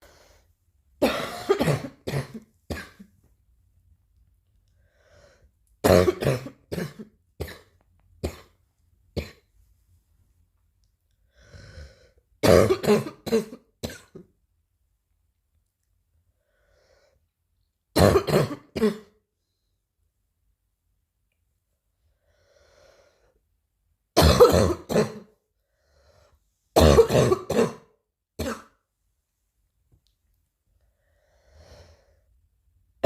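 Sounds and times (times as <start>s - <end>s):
person coughing: 1.0s - 3.1s, 5.8s - 8.6s, 12.4s - 14.3s, 18.0s - 19.2s, 24.2s - 25.4s, 26.8s - 28.8s
faint breath drawn in: 25.6s - 26.5s.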